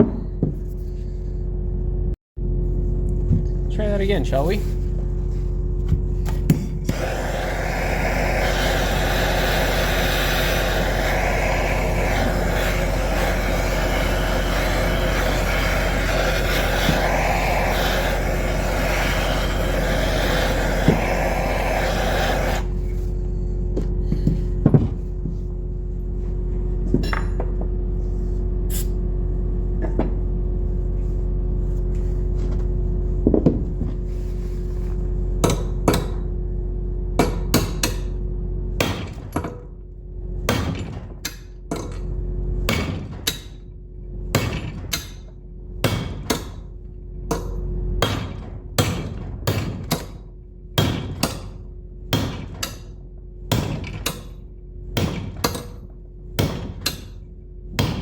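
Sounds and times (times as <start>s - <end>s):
hammer striking metal punch: 37.2s - 38.1s, 52.2s - 52.8s, 57.8s - 58.0s.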